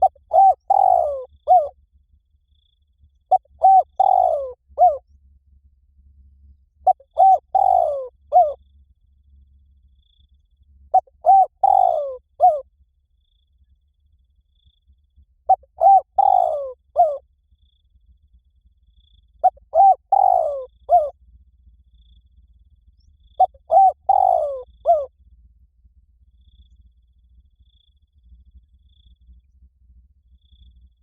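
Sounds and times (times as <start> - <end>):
dove cooing: 0.0 - 1.7, 3.3 - 5.0, 6.8 - 8.6, 10.9 - 12.6, 15.5 - 17.2, 19.4 - 21.2, 23.4 - 25.1.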